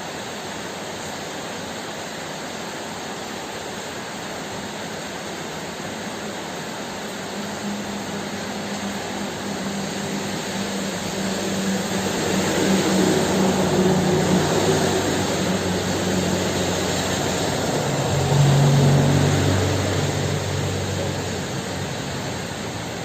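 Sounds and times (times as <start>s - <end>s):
heavy rain hiss: 0.0s - 23.0s
low rumbling hum: 6.9s - 23.0s.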